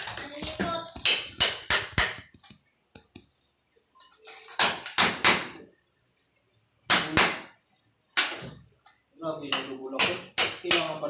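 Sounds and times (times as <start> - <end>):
hammer striking wooden door: 4.6 - 5.6, 6.9 - 7.5, 9.6 - 11.0.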